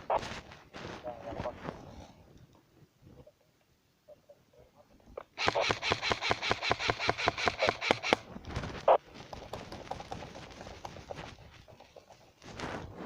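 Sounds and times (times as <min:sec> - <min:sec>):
faint scattered shots: 0:05.3 - 0:09.0
airsoft gun firing rapidly: 0:05.4 - 0:08.2.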